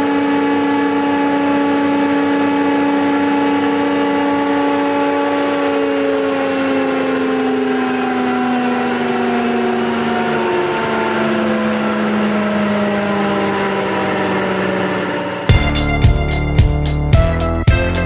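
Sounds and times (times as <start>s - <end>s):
music: 15.5s - 18.0s.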